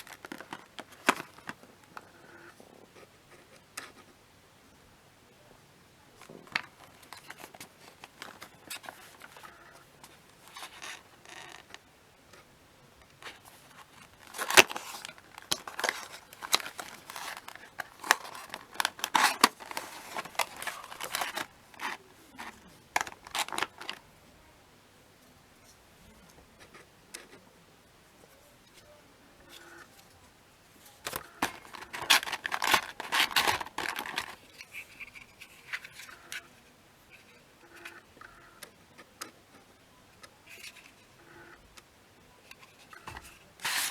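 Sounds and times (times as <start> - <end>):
handling clicks and scrapes: 0.0 - 2.0, 6.2 - 24.0, 30.8 - 36.5, 42.5 - 43.9.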